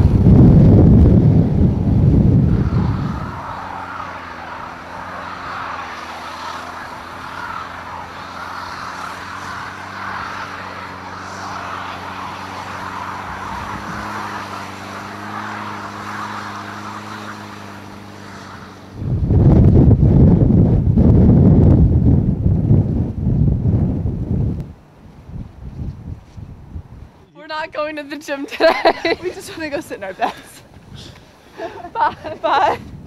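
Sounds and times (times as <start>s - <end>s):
rushing noise: 0.0s - 21.4s
vehicle engine running: 0.0s - 23.2s
wind buffeting microphone: 0.0s - 33.0s.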